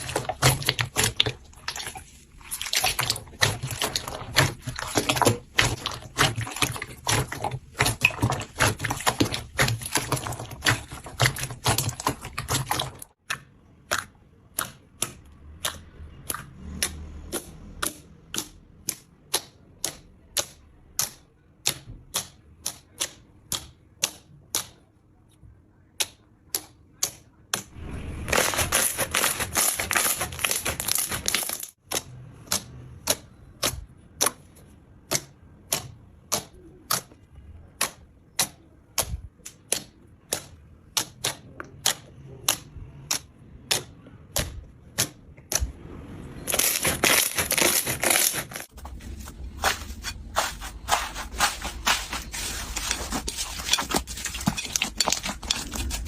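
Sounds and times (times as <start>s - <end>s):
slime crackling: 0.0s - 13.1s, 28.3s - 31.8s, 46.5s - 56.0s.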